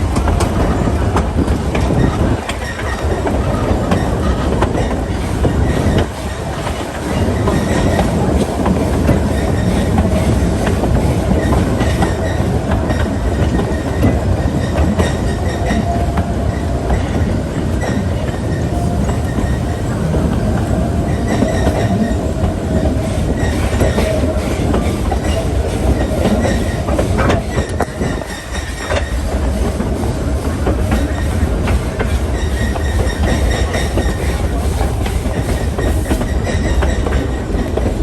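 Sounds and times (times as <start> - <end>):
train coach rumble and wheel clatter: 0.0 - 38.0.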